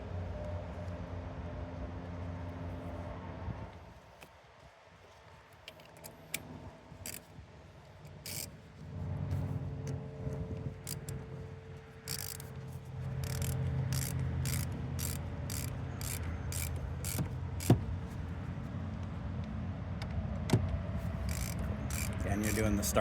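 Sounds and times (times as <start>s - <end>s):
ratchet wrench clicking: 7.0s - 7.3s, 8.0s - 8.6s, 10.8s - 11.2s, 12.0s - 17.8s, 21.2s - 23.0s.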